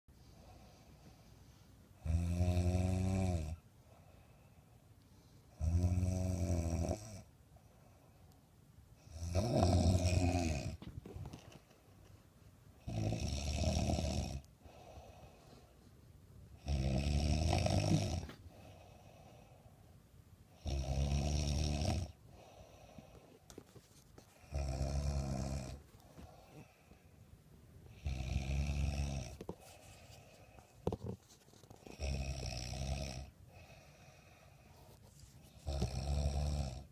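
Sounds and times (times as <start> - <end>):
quiet breathing: 0.1 - 36.9
woman snoring heavily: 2.0 - 3.6, 5.6 - 7.2, 9.0 - 10.8, 12.8 - 15.3, 16.6 - 18.8, 20.6 - 22.9, 24.5 - 25.8, 27.9 - 29.5, 31.9 - 34.4, 35.6 - 36.9.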